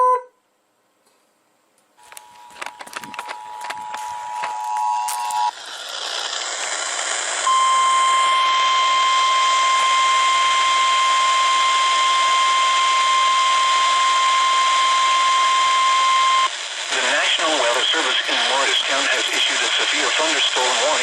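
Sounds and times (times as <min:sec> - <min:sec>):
radio static: 0:02.0 - 0:09.9, 0:10.5 - 0:21.0
steady alarm beep: 0:07.5 - 0:16.5.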